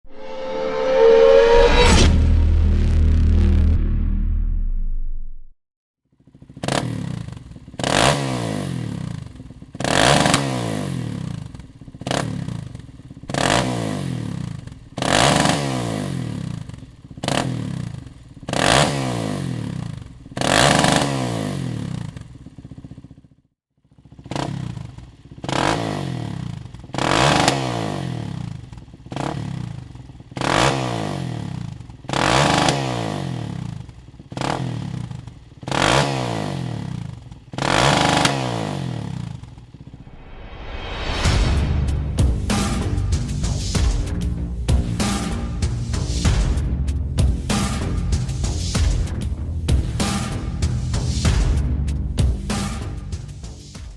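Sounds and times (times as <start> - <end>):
quad bike engine revving: 6.2 - 23.3, 24.0 - 40.0.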